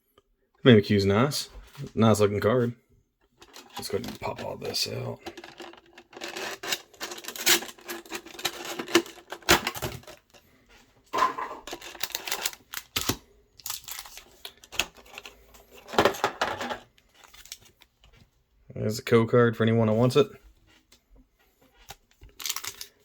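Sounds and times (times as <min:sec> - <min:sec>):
foil packs crinkling: 0:03.4 - 0:10.4, 0:11.7 - 0:16.2, 0:17.2 - 0:17.9, 0:22.2 - 0:23.0.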